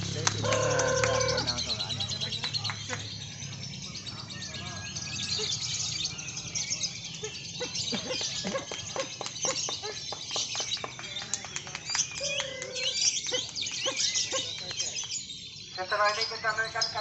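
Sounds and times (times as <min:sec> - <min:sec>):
murmuring voices: 0:00.0 - 0:03.2
songbirds chirping and trilling: 0:00.0 - 0:17.0.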